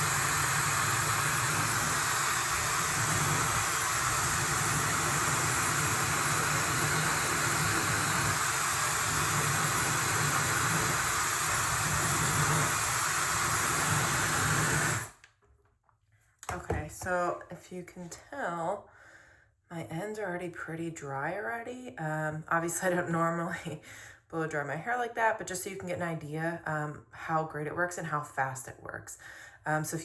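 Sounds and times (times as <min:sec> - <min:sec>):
hair dryer blowing: 0:00.0 - 0:15.2.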